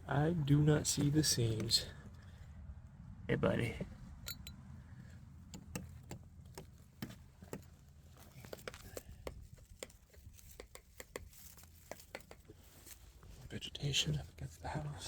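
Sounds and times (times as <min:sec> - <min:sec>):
low steady hum: 0:00.0 - 0:08.4
tapping on wooden siding: 0:05.5 - 0:07.8, 0:08.4 - 0:12.5.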